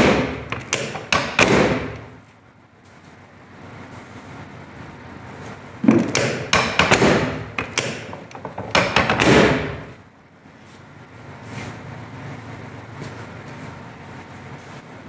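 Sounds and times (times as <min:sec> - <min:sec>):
table clacks and thuds: 0:05.8 - 0:09.9.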